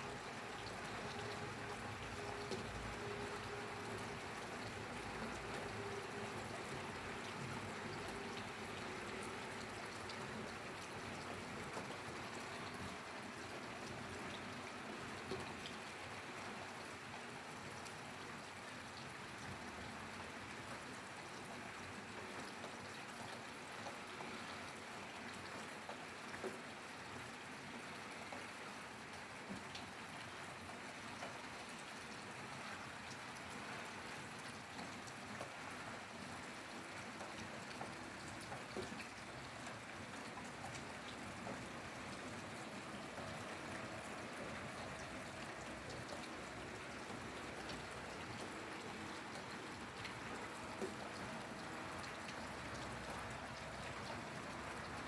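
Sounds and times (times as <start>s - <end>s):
steady rainfall hiss: 0.0s - 17.5s, 39.3s - 55.0s.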